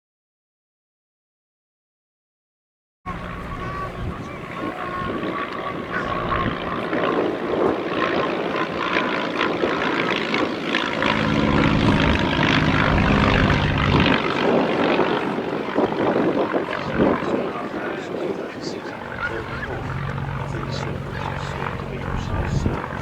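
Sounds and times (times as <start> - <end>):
propeller aircraft engine droning: 3.1 - 23.0.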